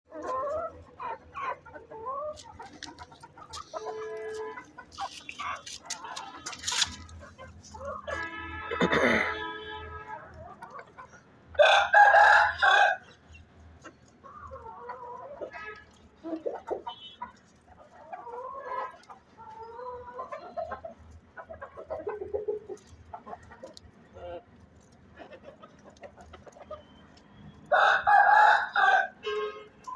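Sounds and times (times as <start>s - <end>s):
hen clucking: 0.1s - 8.3s, 16.2s - 24.5s.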